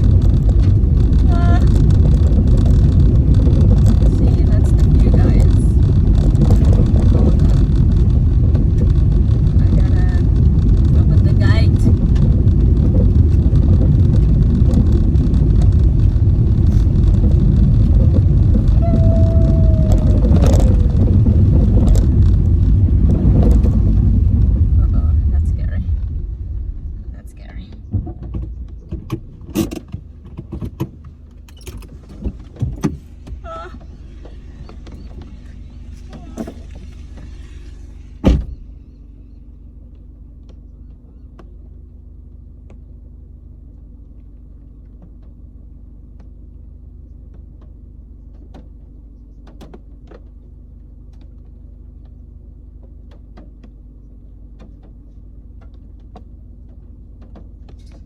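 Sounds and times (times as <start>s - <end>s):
car engine running: 0.0s - 58.0s
knocks and rustling: 27.5s - 38.8s
car door shutting: 27.9s - 38.9s.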